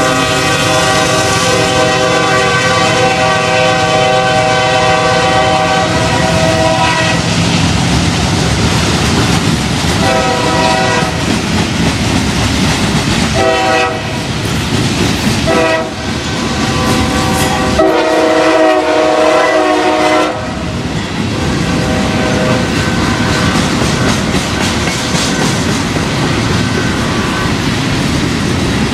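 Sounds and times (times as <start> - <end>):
locomotive air horn: 0.0 - 7.3, 10.0 - 11.3, 13.4 - 14.3, 15.4 - 20.7, 21.4 - 23.5
freight train rumbling and clattering: 0.0 - 28.9.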